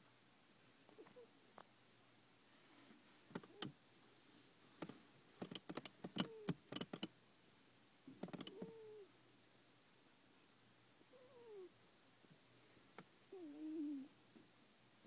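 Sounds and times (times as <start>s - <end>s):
cat snoring: 13.3s - 14.1s.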